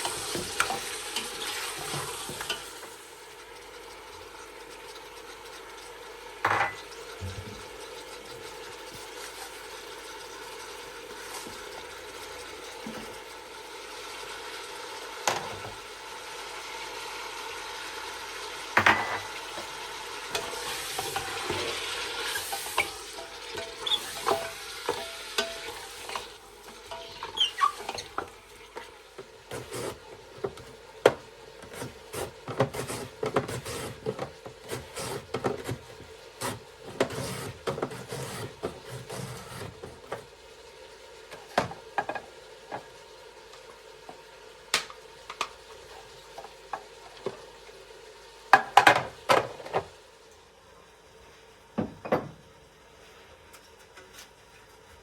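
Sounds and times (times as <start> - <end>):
food sizzling in a frying pan: 0.0 - 51.5
utensil scraping against pan: 20.3 - 26.3, 29.5 - 30.1, 31.6 - 40.0.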